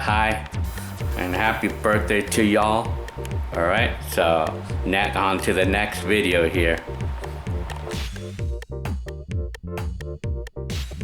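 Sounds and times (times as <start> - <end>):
pulsing synthesizer bass: 0.0 - 8.8
electronic music with steady beat: 0.0 - 11.0.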